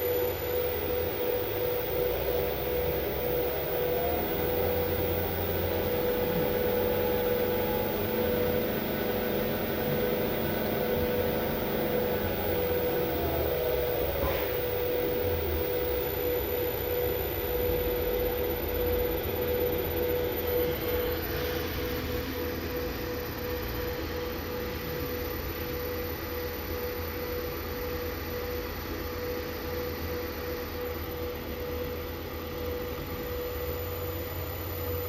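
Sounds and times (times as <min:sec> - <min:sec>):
motor whirring hum: 0:00.0 - 0:22.7.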